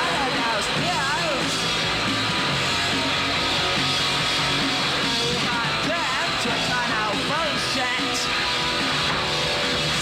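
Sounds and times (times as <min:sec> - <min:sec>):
punk rock band playing: 0:00.0 - 0:10.0.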